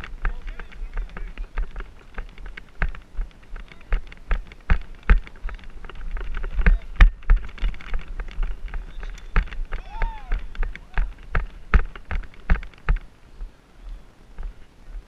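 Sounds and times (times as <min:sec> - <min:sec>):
clattering knocks and thumps: 0:00.0 - 0:13.1
wind rumble on microphone: 0:00.0 - 0:15.0.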